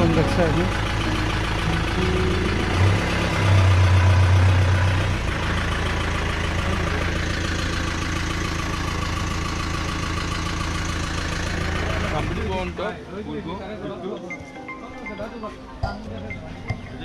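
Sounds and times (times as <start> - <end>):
vehicle engine idling: 0.0 - 14.0.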